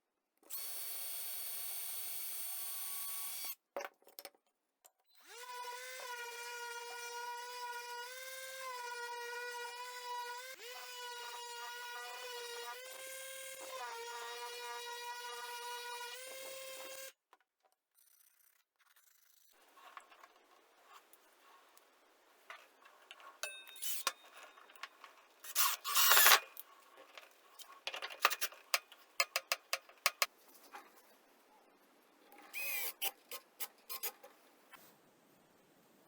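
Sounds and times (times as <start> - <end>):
tools clicking and tapping: 22.5 - 30.3.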